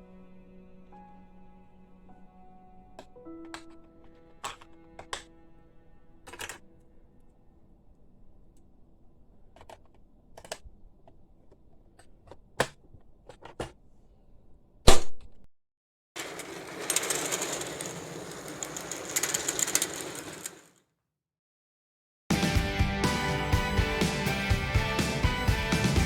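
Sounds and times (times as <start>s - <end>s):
sewing machine stitching: 16.2s - 20.8s.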